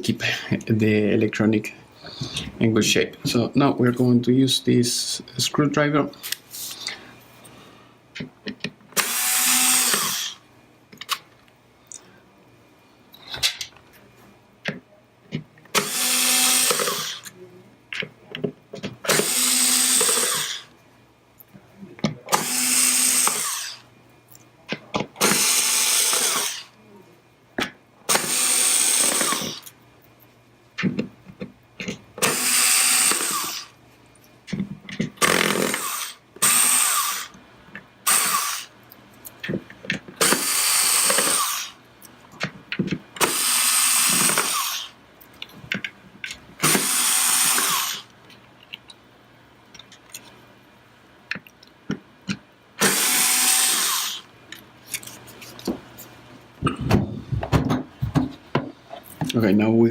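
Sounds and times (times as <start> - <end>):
power screwdriver whirring: 9.0 - 10.4, 15.8 - 17.2, 19.1 - 20.6, 22.3 - 23.8, 25.2 - 26.7, 28.1 - 29.7, 32.2 - 33.7, 35.2 - 37.3, 38.1 - 38.7, 40.2 - 41.7, 43.2 - 44.9, 46.6 - 48.1, 52.8 - 54.2.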